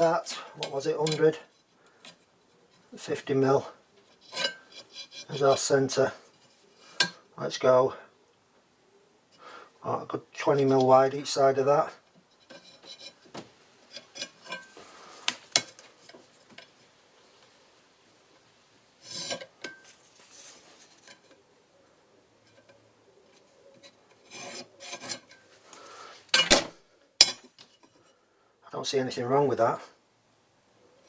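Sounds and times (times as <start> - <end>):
scraping on steel plate: 4.0 - 7.2, 12.4 - 13.3, 13.9 - 16.8, 19.0 - 21.5, 22.5 - 26.6.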